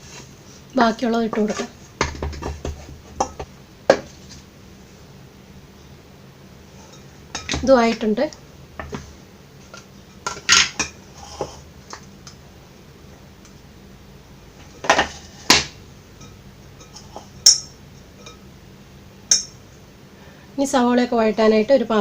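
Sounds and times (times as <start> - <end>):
metal dishes clinking and knocking: 1.4 - 4.0, 6.8 - 8.0, 9.7 - 11.0, 16.2 - 18.4, 19.3 - 19.6.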